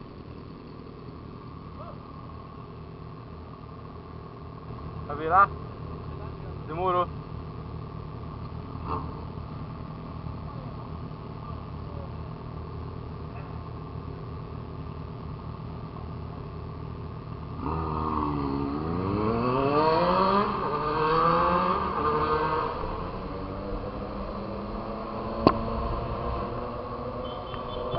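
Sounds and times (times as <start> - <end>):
motorcycle engine accelerating: 17.5 - 27.9.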